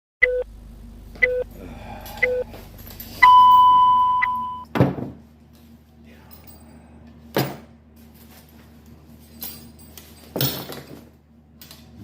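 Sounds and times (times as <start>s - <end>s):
electronic countdown beeps: 0.2s - 0.5s, 1.2s - 1.5s, 2.2s - 2.5s, 3.2s - 4.7s.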